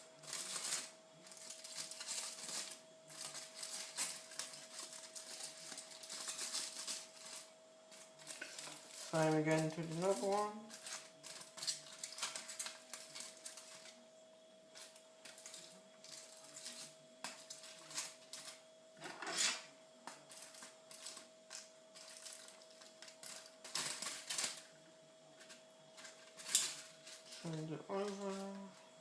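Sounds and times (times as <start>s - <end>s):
faint steady hum: 0.0s - 29.0s
cutlery scraping a baking tray: 15.3s - 21.2s.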